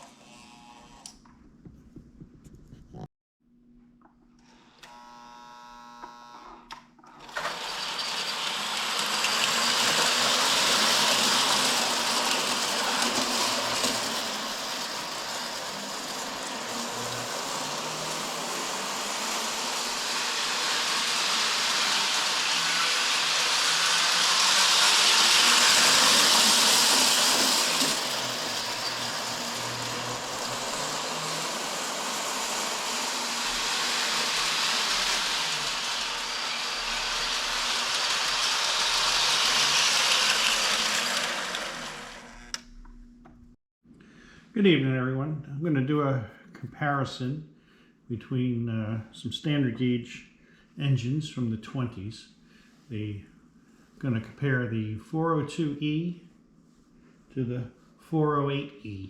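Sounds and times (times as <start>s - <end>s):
toy train whirring on rails: 7.2s - 42.5s.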